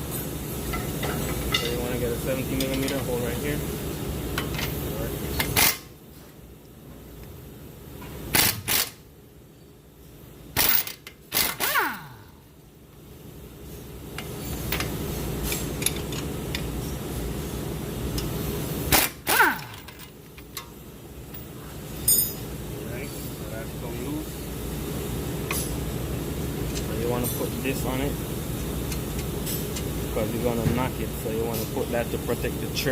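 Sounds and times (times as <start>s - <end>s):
steady low hum: 0.0s - 32.9s
impact wrench bursts: 5.4s - 5.9s, 8.3s - 9.0s, 10.6s - 12.3s, 18.9s - 20.2s.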